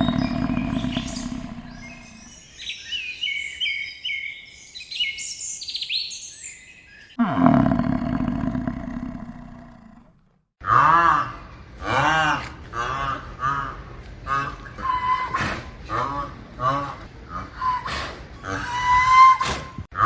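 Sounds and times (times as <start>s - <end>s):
loud low rough animal call: 0.0s - 2.6s, 7.2s - 10.2s
high bird chirps: 0.0s - 9.7s.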